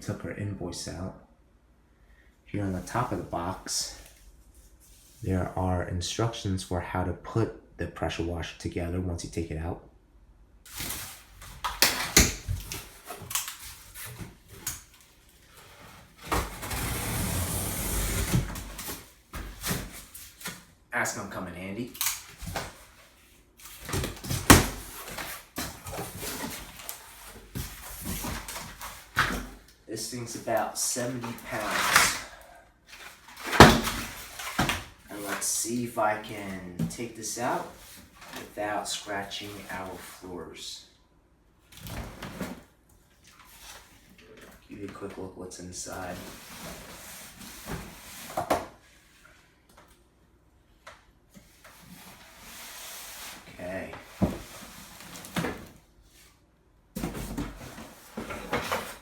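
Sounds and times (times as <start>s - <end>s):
cardboard box scraping: 15.6s - 20.4s.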